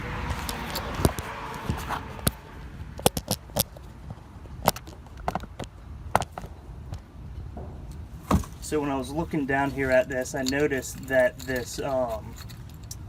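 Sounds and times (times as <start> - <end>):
sharp clicks and knocks: 3.0 - 8.6.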